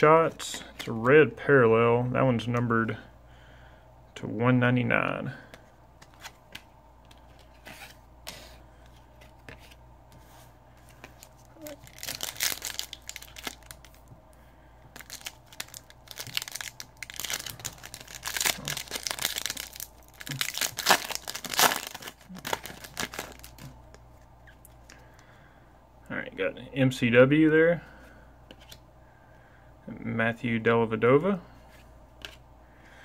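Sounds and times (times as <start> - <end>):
wrapper tearing and crinkling: 11.6 - 14.0, 15.0 - 23.7.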